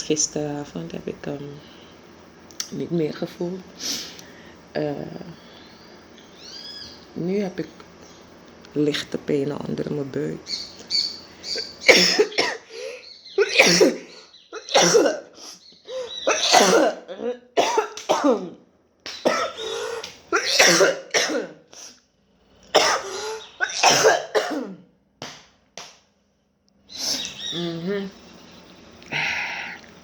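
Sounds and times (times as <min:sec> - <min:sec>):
person coughing: 0:11.9 - 0:15.4, 0:16.2 - 0:18.6, 0:19.3 - 0:21.9, 0:22.7 - 0:24.9.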